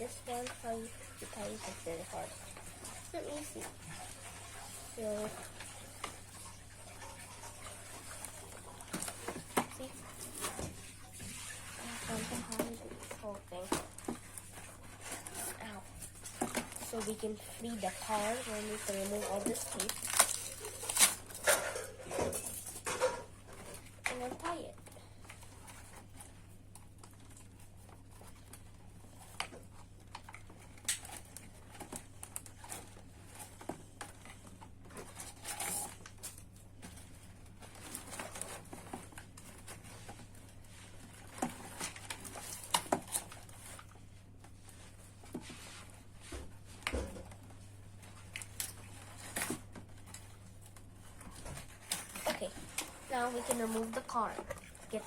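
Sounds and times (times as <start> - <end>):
plastic packaging crinkling: 11.8 - 26.2.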